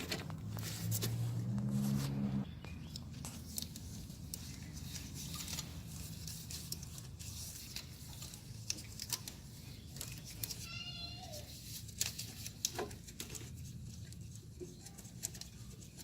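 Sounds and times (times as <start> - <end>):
low hum: 0.2 - 2.7.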